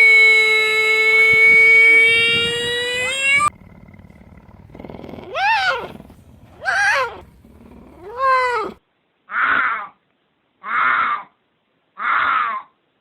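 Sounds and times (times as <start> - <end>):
harsh animal call: 0.4 - 10.0
animal calling: 0.5 - 10.0.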